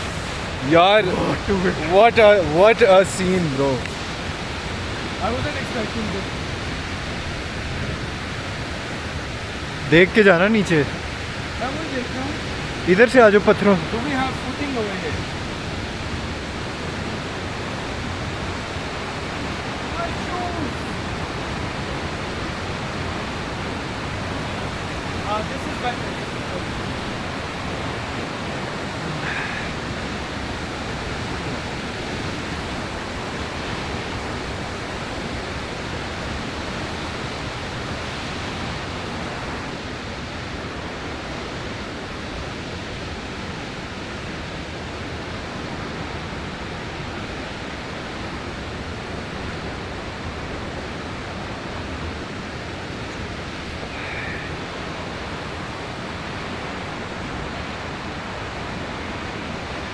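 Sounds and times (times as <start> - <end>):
waterfall roaring: 0.0 - 59.9.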